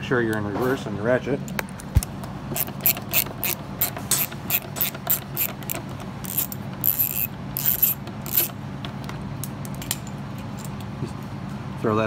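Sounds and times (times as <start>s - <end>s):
ratchet clicking: 2.5s - 8.6s.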